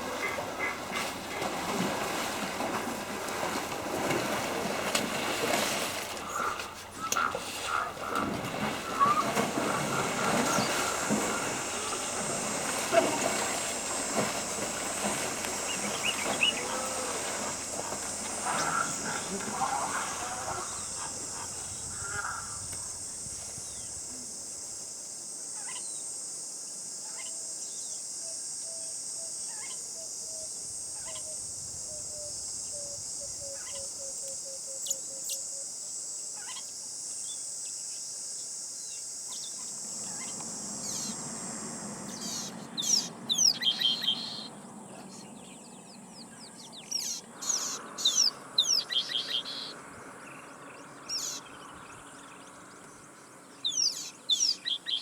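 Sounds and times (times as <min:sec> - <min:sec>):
wild birds calling: 0:00.0 - 0:02.9, 0:05.5 - 0:23.8, 0:39.3 - 0:55.0
high-pitched insect chorus: 0:06.2 - 0:55.0.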